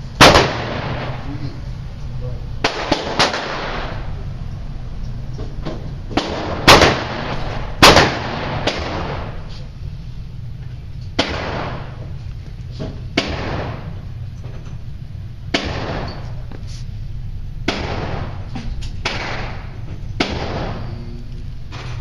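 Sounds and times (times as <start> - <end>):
pistol shots with echo: 0.2 - 1.3, 2.6 - 4.1, 6.2 - 9.5, 11.2 - 12.0, 13.2 - 14.0, 15.5 - 16.4, 17.6 - 21.0.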